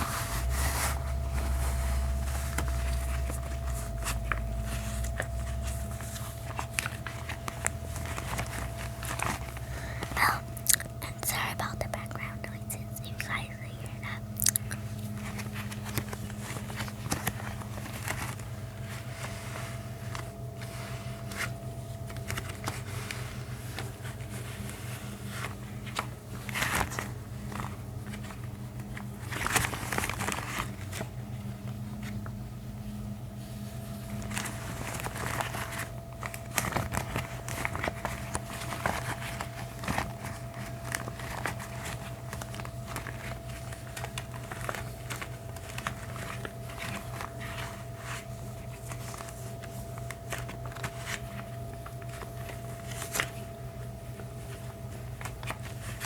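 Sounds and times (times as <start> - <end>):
gloves rubbing and crinkling: 0.0 - 32.2, 33.3 - 56.0
steady low hum: 0.0 - 56.0.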